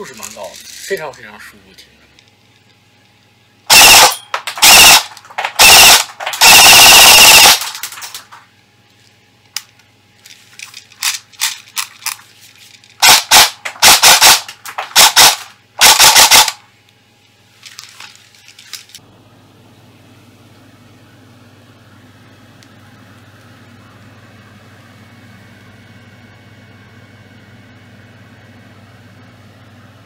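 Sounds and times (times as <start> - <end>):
airsoft gun firing bursts: 3.7 - 7.8, 13.0 - 16.6.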